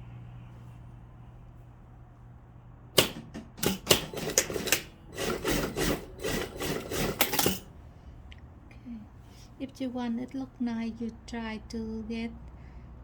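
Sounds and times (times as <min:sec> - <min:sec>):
sewing clicks and taps: 0:03.0 - 0:07.6.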